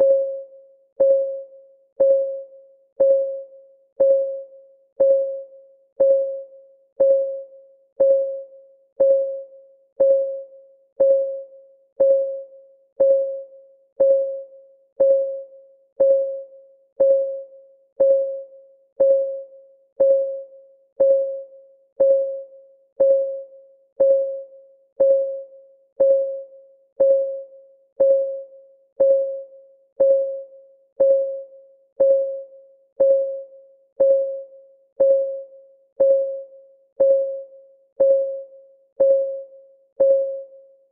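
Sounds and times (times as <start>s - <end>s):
timer clock ticking: 2.0s - 2.4s, 3.0s - 3.4s, 4.0s - 4.4s, 5.0s - 5.4s, 6.0s - 6.4s, 7.0s - 7.4s, 8.0s - 8.4s, 9.0s - 9.4s, 10.0s - 10.4s, 11.0s - 11.4s, 12.0s - 12.4s, 13.0s - 13.4s, 14.0s - 14.4s, 15.0s - 15.4s, 16.0s - 16.4s, 17.0s - 17.4s, 18.0s - 18.4s, 19.0s - 19.4s, 20.0s - 20.4s, 21.0s - 21.4s, 22.0s - 22.4s, 23.0s - 23.4s, 24.0s - 24.4s, 25.0s - 25.4s, 26.0s - 26.4s, 27.0s - 27.4s, 28.0s - 28.4s, 29.0s - 29.4s, 30.0s - 30.4s, 31.0s - 31.4s, 32.0s - 32.4s, 33.0s - 33.4s, 34.0s - 34.4s, 35.0s - 35.4s, 36.0s - 36.4s, 37.0s - 37.4s, 38.0s - 38.4s, 39.0s - 39.4s.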